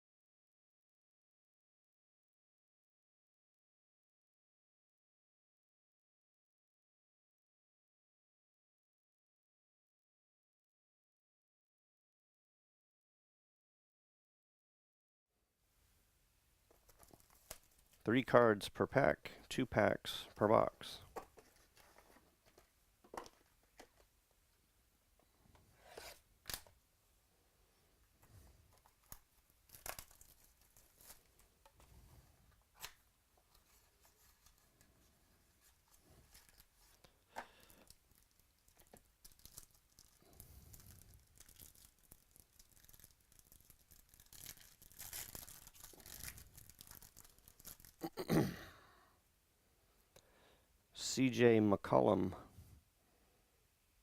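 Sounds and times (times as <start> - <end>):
wrappers tearing and crinkling: 28.8 - 31.5, 36.2 - 48.2.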